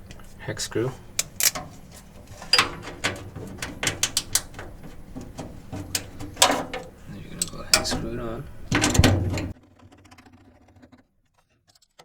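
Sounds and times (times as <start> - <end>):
clicks of small hardware handled: 1.0 - 8.1.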